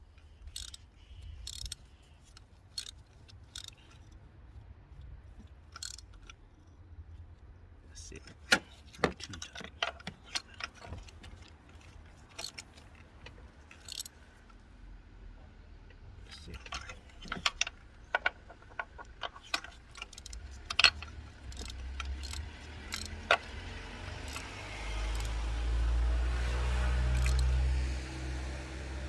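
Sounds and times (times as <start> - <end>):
metal hand tools clinking: 0.5 - 4.0, 8.4 - 14.2, 16.3 - 25.4, 27.1 - 27.6.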